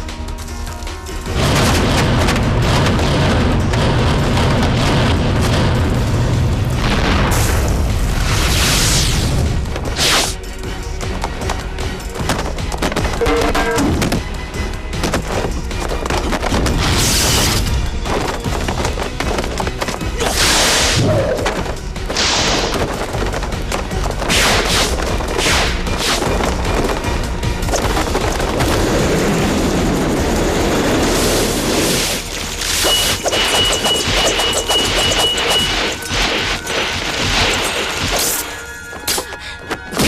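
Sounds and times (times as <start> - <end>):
action film music: 0.0 - 40.0
booming crashing impacts: 1.3 - 9.8.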